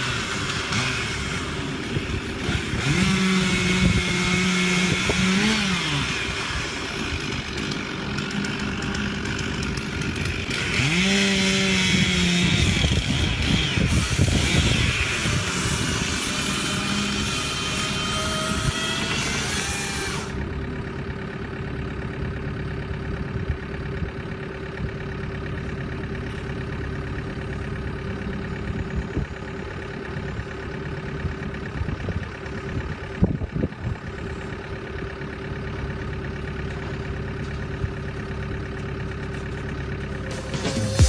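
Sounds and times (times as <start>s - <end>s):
tree-cutting machine engine: 0.0s - 41.0s
high whine: 40.1s - 41.0s.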